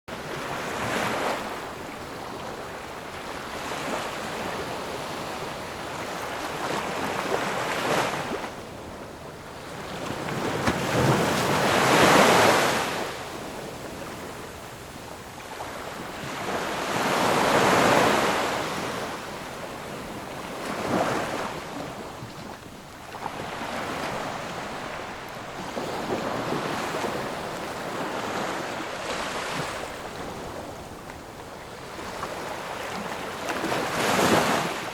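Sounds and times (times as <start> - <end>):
waves breaking: 9.4 - 14.4, 15.3 - 34.9.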